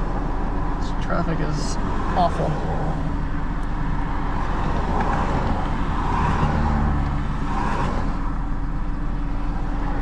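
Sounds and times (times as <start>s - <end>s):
truck engine idling: 0.0s - 6.0s
passing cars: 0.0s - 10.0s.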